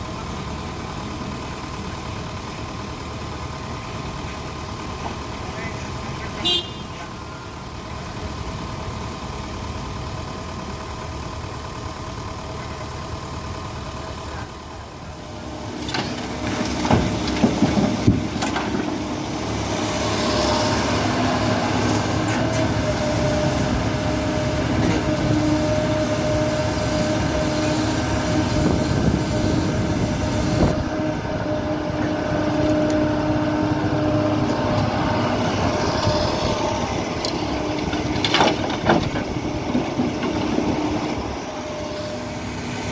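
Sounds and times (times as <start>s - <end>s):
excavator diesel engine running: 0.0s - 42.9s.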